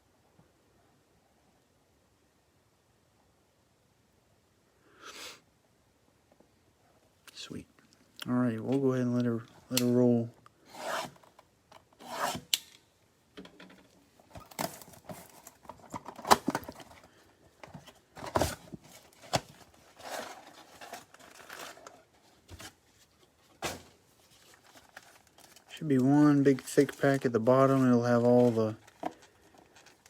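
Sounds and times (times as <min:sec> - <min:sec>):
wrapping tearing and crinkling: 0:18.2 - 0:30.0
cardboard and card packs clicking: 0:23.6 - 0:30.0.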